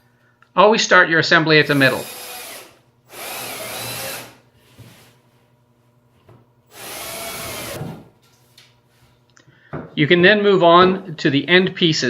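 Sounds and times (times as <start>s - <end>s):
power drill driving bolt into wood: 1.8s - 4.4s, 6.7s - 8.1s.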